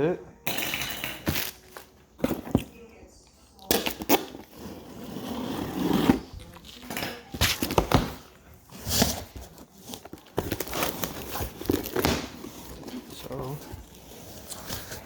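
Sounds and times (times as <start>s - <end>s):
packaging rustling and crinkling: 7.4s - 15.0s.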